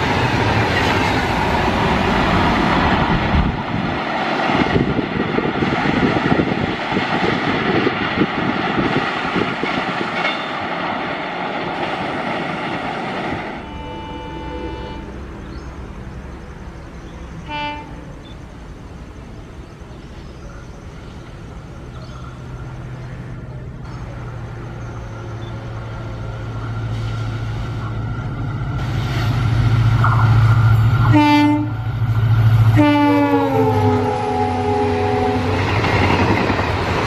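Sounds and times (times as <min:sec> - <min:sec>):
train rumble: 0:00.0 - 0:37.0
locomotive horn: 0:13.6 - 0:15.3, 0:17.4 - 0:18.2, 0:31.0 - 0:32.0, 0:32.6 - 0:35.7.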